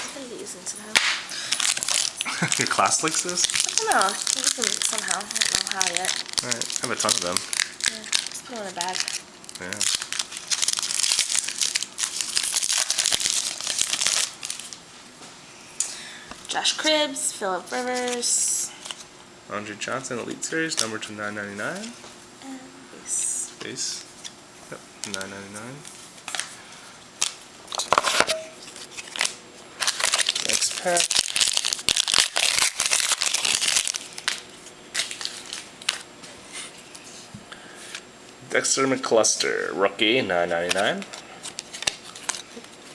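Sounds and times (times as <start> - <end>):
plastic packaging crinkling and tearing: 0.2 - 14.8, 17.8 - 19.0, 25.0 - 26.6, 27.2 - 37.0, 40.5 - 42.9.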